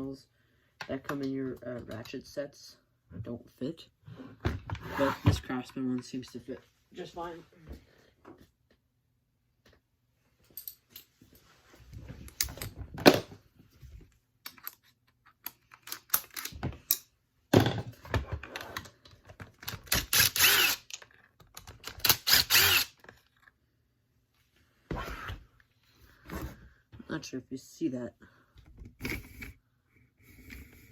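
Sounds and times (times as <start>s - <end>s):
ratchet clicking: 19.9s - 21.0s.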